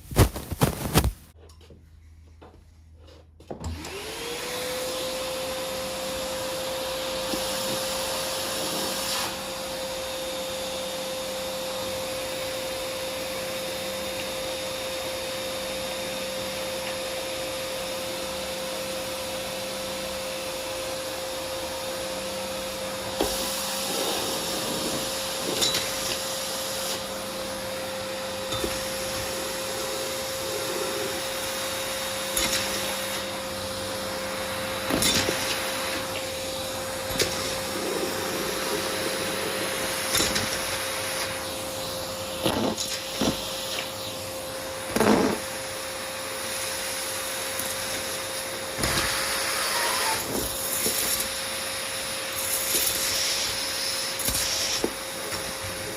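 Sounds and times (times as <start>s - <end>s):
vacuum cleaner humming: 3.6s - 55.9s.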